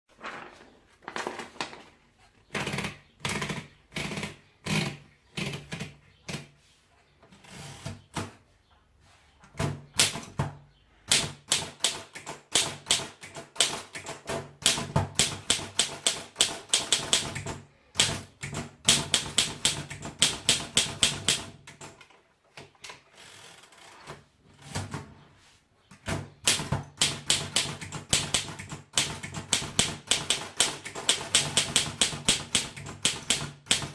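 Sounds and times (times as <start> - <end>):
typewriter typing: 11.1 - 22.0, 26.4 - 33.9.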